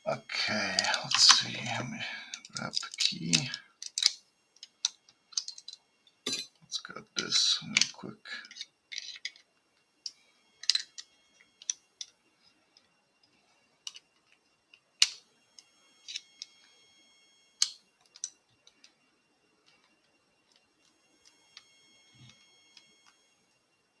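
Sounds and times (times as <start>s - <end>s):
metallic clicks of padlock and tools: 3.8s - 6.5s.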